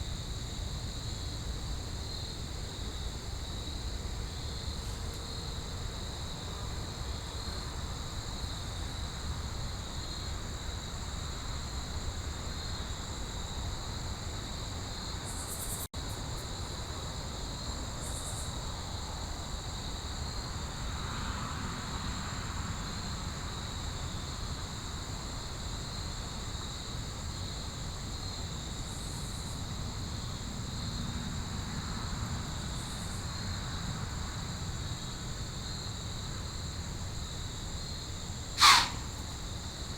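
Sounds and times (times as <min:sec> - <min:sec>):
crickets trilling: 0:00.0 - 0:39.9.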